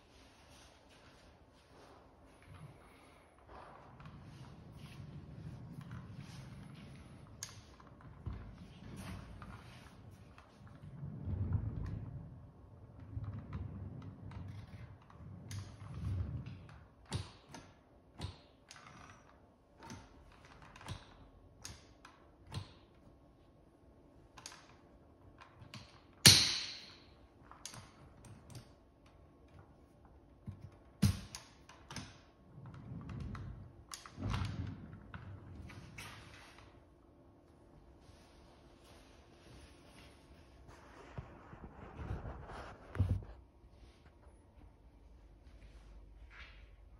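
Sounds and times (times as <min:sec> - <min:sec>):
low rumble of wheels rolling: 0:00.0 - 0:17.3, 0:31.6 - 0:46.9.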